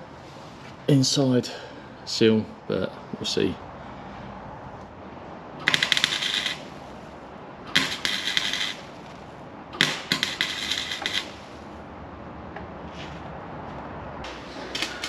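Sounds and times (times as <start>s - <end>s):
crackling welding: 5.6s - 7.1s, 7.7s - 11.7s, 14.3s - 15.0s.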